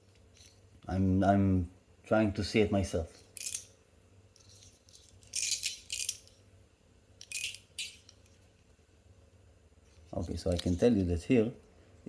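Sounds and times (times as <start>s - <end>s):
metal toy clicking and rattling: 3.3s - 3.7s, 4.4s - 6.4s, 7.2s - 8.4s.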